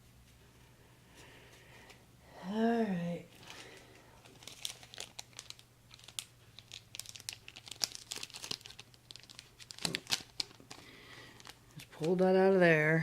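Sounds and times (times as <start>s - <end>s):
foil wrapper crinkling and tearing: 3.4s - 12.2s.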